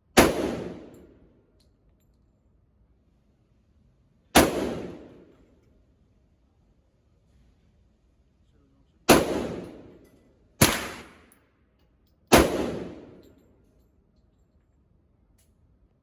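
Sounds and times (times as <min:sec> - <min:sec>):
gunshots with echo: 0:00.2 - 0:00.9, 0:04.4 - 0:05.2, 0:09.1 - 0:09.9, 0:10.6 - 0:11.3, 0:12.3 - 0:13.2.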